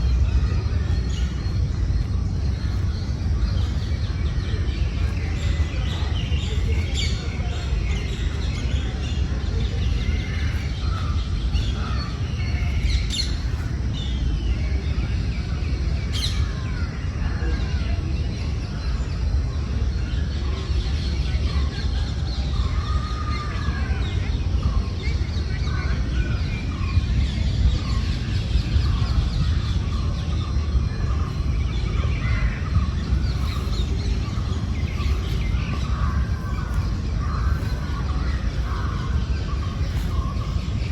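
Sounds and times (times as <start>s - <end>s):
low rumble: 0.0s - 15.7s, 26.8s - 40.9s
birds chirping: 0.0s - 40.9s.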